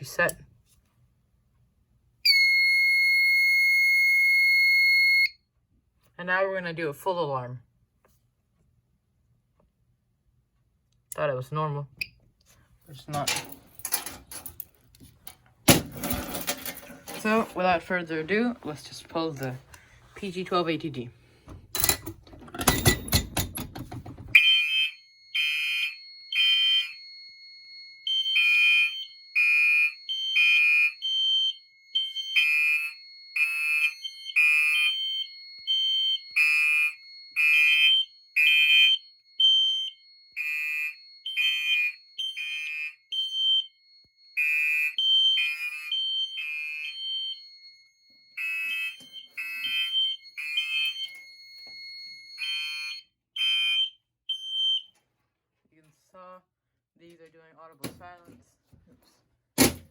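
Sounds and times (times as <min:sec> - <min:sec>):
fire alarm pull station clattering: 0:13.1 - 0:14.6, 0:15.6 - 0:17.6, 0:21.5 - 0:24.6.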